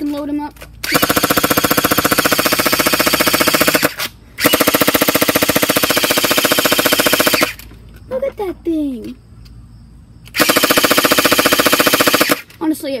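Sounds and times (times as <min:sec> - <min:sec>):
toy gun rapid clicks: 0:00.8 - 0:07.6, 0:10.3 - 0:12.5.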